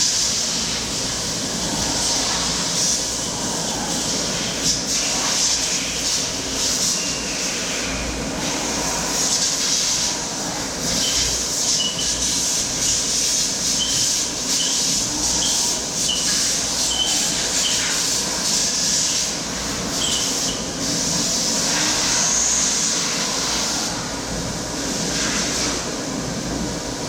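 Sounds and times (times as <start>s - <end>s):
machine hiss over low rumble: 0.0s - 27.0s
short high squeaks: 11.0s - 12.3s, 13.6s - 18.0s, 20.0s - 20.7s.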